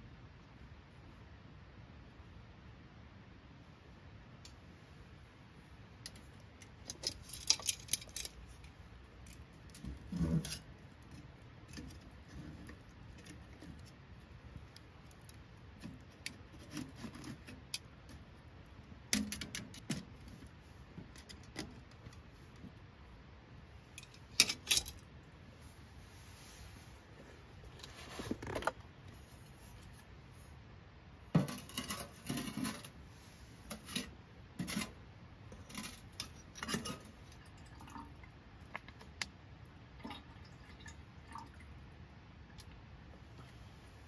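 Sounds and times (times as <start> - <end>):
small objects clinking: 6.9 - 8.7.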